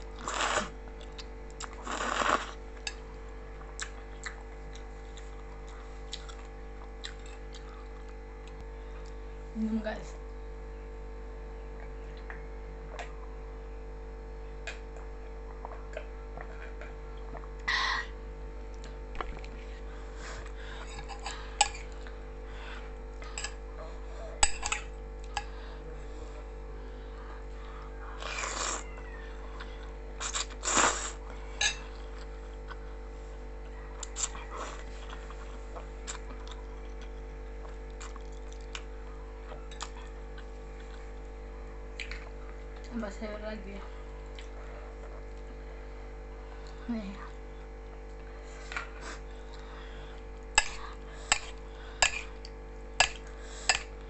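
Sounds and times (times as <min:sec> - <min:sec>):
person chewing and slurping: 0:00.0 - 0:09.2, 0:18.8 - 0:41.4, 0:44.1 - 0:45.8, 0:48.1 - 0:54.0
steady low hum: 0:00.0 - 0:54.0.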